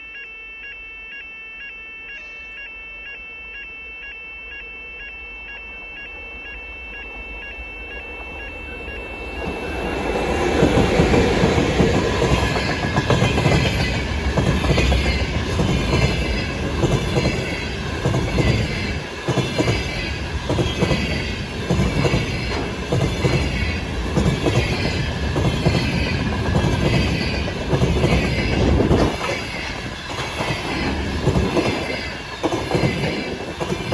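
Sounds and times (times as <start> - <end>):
train wheels clattering over rails: 9.5 - 33.9.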